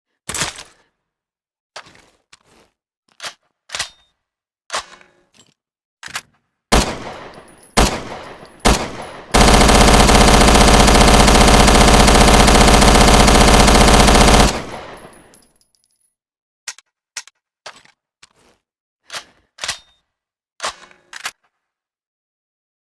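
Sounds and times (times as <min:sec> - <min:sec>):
submachine gun firing: 0:06.7 - 0:15.3.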